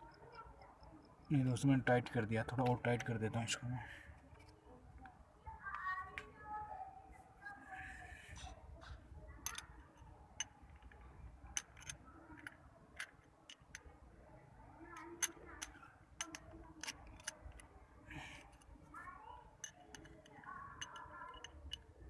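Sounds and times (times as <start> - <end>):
wrench clicking on metal: 9.4 - 9.7, 11.6 - 13.8, 15.0 - 18.7, 19.6 - 21.9.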